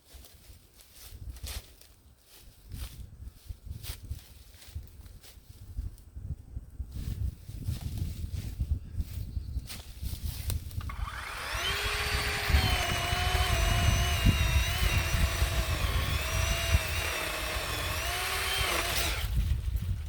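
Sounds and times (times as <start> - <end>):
electric chainsaw motor whining: 10.7 - 19.8.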